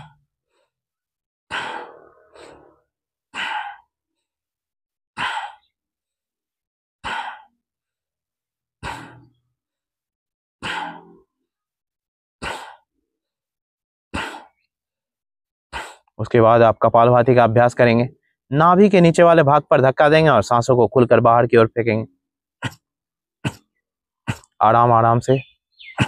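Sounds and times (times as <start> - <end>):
man's forceful breaths: 1.5 - 2.8, 3.4 - 3.9, 5.2 - 5.7, 7.0 - 7.6, 8.8 - 9.3, 10.6 - 11.0, 12.4 - 12.9, 14.2 - 14.6, 15.7 - 16.2.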